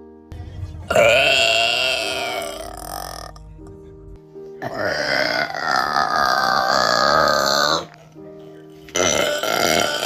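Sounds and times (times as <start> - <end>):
girl burping loudly: 0.9 - 3.4, 4.6 - 7.9, 8.9 - 10.0.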